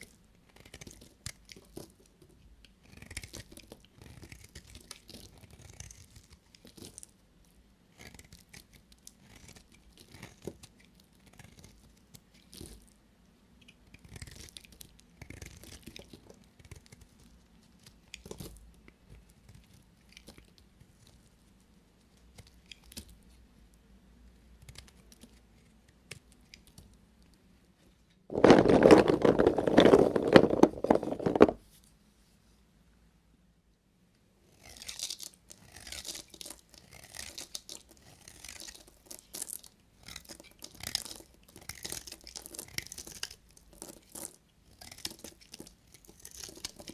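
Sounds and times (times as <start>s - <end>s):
knife cutting dry soap: 0.4s - 7.1s, 34.5s - 46.9s.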